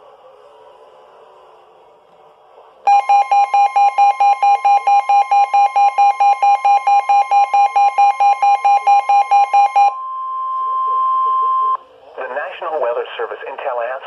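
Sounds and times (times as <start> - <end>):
lower tone beeping: 2.9 - 11.8
steady high alert tone: 2.9 - 11.8.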